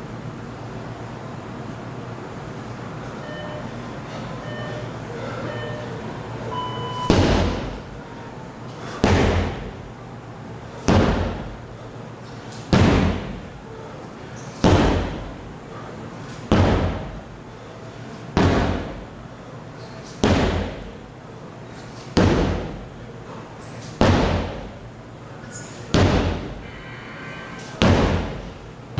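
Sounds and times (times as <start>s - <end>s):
sledgehammer strikes: 7.0s - 7.8s, 9.0s - 9.7s, 10.9s - 11.5s, 12.7s - 13.4s, 14.6s - 15.3s, 16.5s - 17.1s, 18.4s - 19.0s, 20.2s - 20.9s, 22.2s - 22.8s, 24.0s - 24.7s, 25.9s - 26.6s, 27.8s - 28.5s.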